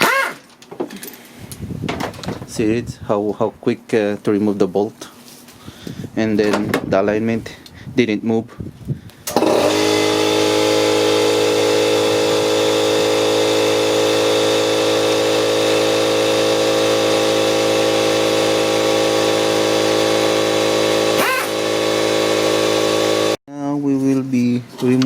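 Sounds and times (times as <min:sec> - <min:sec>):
small motor running: 0:09.3 - 0:23.4.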